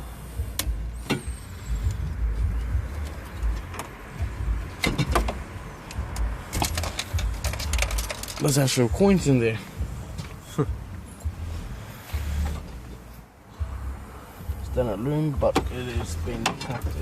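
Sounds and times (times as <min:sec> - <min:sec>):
low rumble: 0:00.0 - 0:17.0
dashboard parts clicking: 0:00.5 - 0:08.8, 0:15.4 - 0:17.0.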